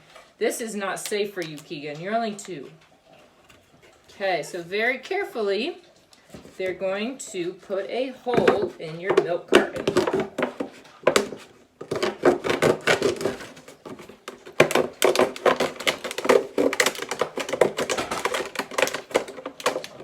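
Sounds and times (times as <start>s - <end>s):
knife cutting cardboard carton: 9.6s - 20.0s.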